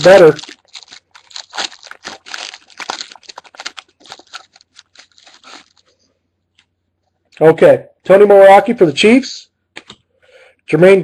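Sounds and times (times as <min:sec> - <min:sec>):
foil wrapper tearing and crinkling: 0:00.0 - 0:05.9.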